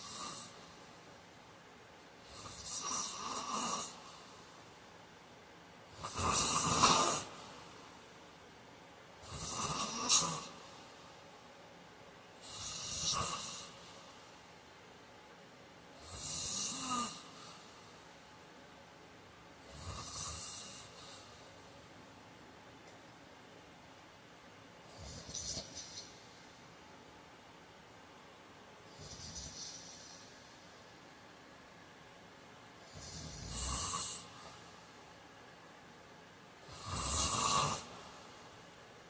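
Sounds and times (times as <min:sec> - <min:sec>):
man snoring: 0:00.0 - 0:00.6, 0:02.3 - 0:04.3, 0:05.9 - 0:07.5, 0:09.2 - 0:10.7, 0:12.4 - 0:13.8, 0:16.0 - 0:17.6, 0:19.6 - 0:21.3, 0:24.9 - 0:25.8, 0:32.9 - 0:34.6, 0:36.7 - 0:38.2.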